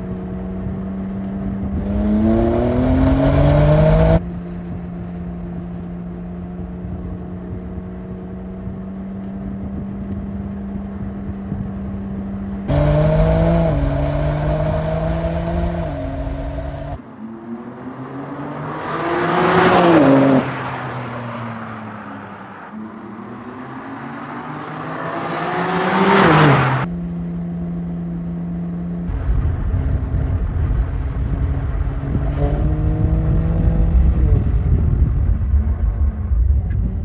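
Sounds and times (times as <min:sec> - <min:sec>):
engine revving with deep rumble: 0:00.0 - 0:04.2, 0:12.6 - 0:20.5, 0:27.8 - 0:37.0
car passing at speed: 0:12.7 - 0:26.9.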